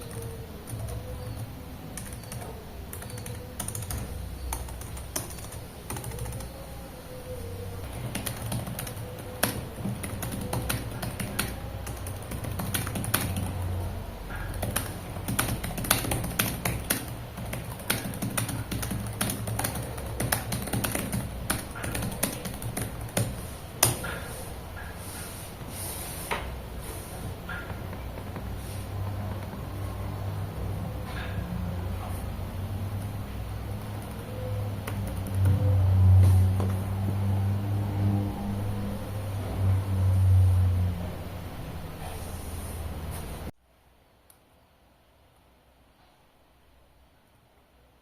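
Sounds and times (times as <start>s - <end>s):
laptop keys clicking: 0.0s - 6.5s, 7.9s - 13.6s, 14.5s - 24.2s.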